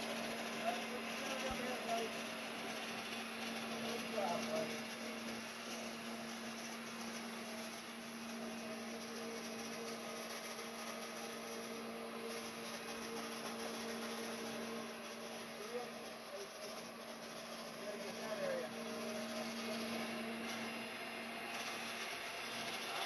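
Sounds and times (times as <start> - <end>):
vacuum cleaner motor humming: 0.0 - 23.0.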